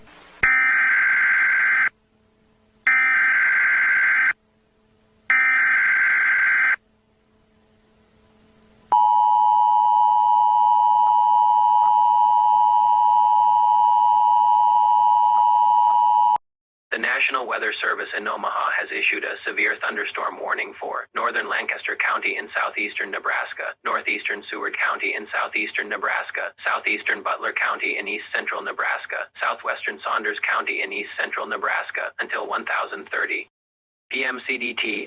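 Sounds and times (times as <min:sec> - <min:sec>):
two-tone attention signal: 0:08.9 - 0:16.4.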